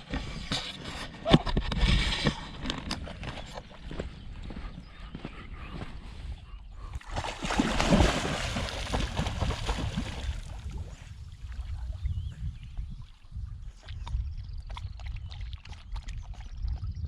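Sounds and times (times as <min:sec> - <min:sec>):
wind rumble on microphone: 0:00.0 - 0:17.0
dog splashing through water: 0:07.0 - 0:10.9.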